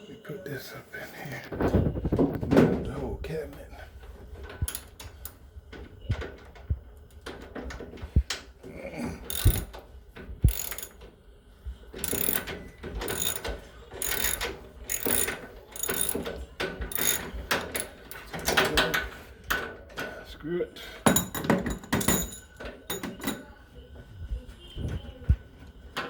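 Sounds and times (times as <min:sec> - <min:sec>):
ratchet wrench clicking: 0:04.7 - 0:05.4, 0:09.3 - 0:09.8, 0:10.4 - 0:11.0, 0:12.0 - 0:12.5, 0:13.1 - 0:18.9.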